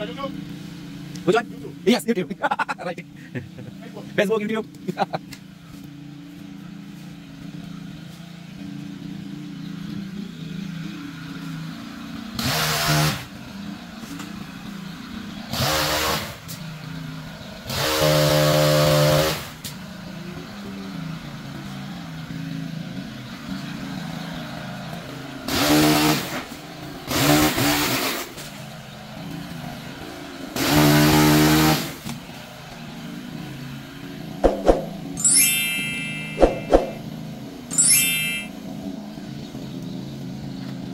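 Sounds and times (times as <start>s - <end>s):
chainsaw revving cutting limbs: 12.4s - 13.3s, 15.5s - 16.4s, 17.7s - 19.6s, 25.5s - 28.3s, 30.6s - 32.0s.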